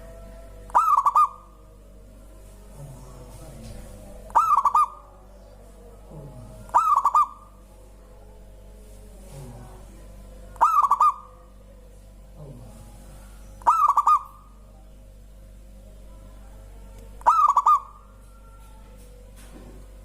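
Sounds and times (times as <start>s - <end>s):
dove cooing: 0.0s - 2.2s, 4.2s - 7.6s, 10.5s - 11.7s, 13.0s - 14.7s, 17.2s - 18.7s.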